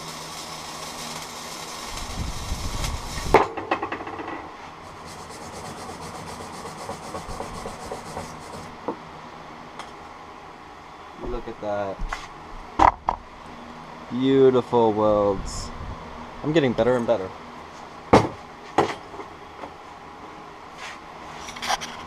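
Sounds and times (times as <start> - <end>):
arc welding crackling and hissing: 0.0 - 8.9.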